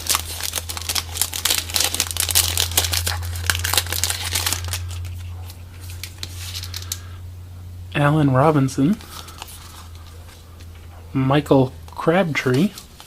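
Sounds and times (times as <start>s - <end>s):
foil wrapper crinkling and tearing: 0.0s - 7.1s, 8.9s - 10.6s
steady low hum: 0.0s - 13.0s.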